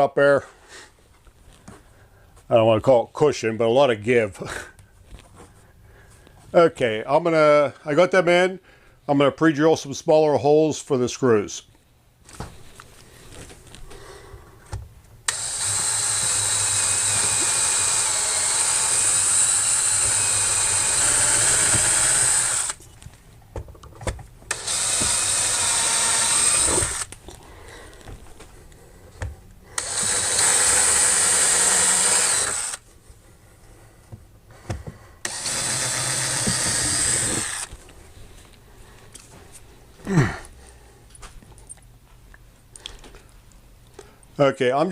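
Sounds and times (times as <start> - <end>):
power drill boring into wood: 15.3 - 22.8, 24.5 - 27.1, 29.8 - 32.8, 35.2 - 37.7.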